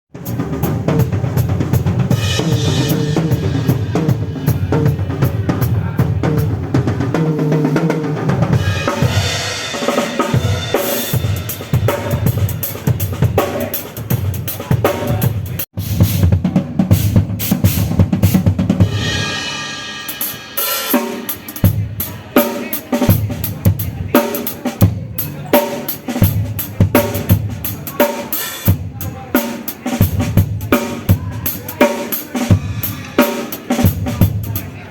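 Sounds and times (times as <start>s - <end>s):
drum kit playing: 0.1s - 34.9s.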